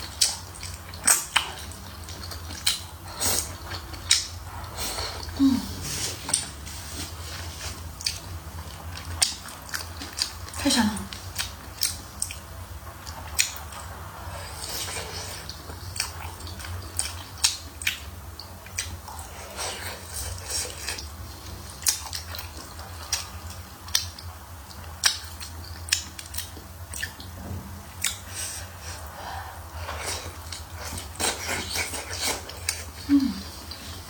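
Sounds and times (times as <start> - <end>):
person chewing and lip smacking: 0.0 - 5.4, 8.0 - 12.4, 14.7 - 21.1, 21.8 - 27.3, 28.0 - 29.2, 29.9 - 34.0
steady low hum: 0.0 - 34.0.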